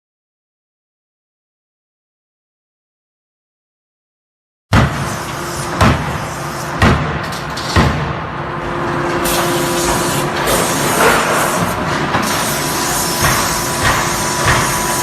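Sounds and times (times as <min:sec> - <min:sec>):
hammer striking hot steel: 0:04.7 - 0:08.2, 0:09.4 - 0:15.0
machinery hiss: 0:09.2 - 0:15.0.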